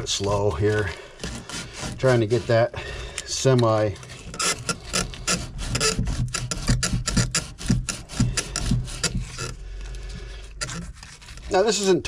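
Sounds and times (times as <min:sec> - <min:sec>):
hand tool rasping on plastic pipe: 0:00.0 - 0:12.0.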